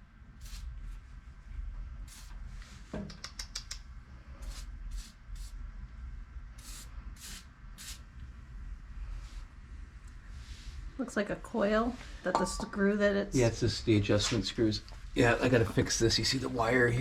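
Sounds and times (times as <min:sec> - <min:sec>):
aerosol can spraying: 0:00.4 - 0:00.8, 0:02.1 - 0:02.4, 0:04.4 - 0:05.6, 0:06.6 - 0:08.0.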